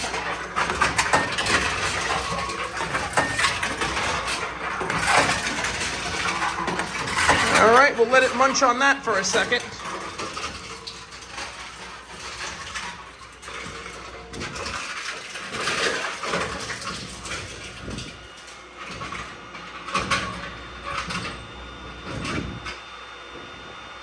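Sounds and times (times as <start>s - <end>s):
metal cans clanking: 0.0s - 21.3s
steady machine hum: 0.0s - 24.0s.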